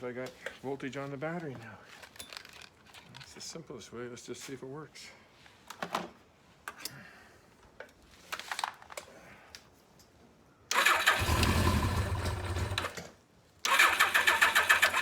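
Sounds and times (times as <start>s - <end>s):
electric starter cranking engine: 10.7s - 13.0s, 13.7s - 15.0s.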